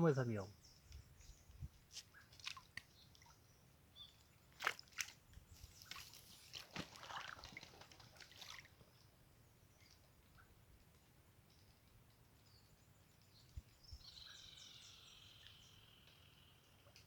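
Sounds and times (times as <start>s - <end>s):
water splashes and drips: 1.9s - 12.2s.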